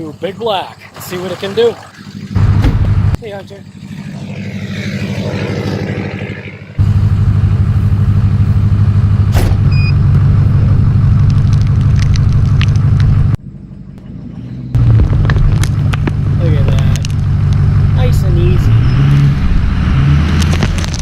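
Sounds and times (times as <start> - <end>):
vehicle engine running under load: 1.9 - 21.0.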